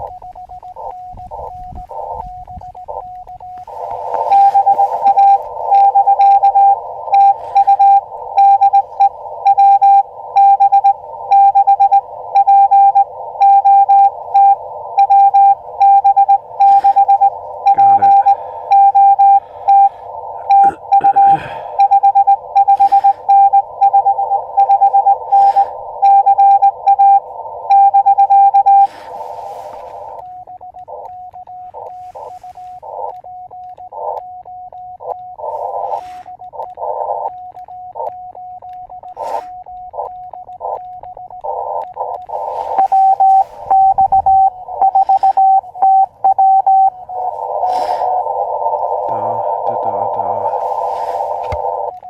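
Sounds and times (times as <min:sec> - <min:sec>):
morse code tones: 0:00.0 - 0:52.0
morse sidetone: 0:00.0 - 0:52.0
radio band hiss: 0:00.0 - 0:52.0.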